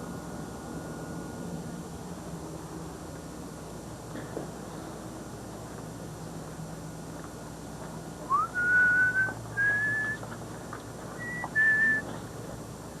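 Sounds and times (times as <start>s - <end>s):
person whistling: 8.3s - 10.2s, 11.2s - 12.1s.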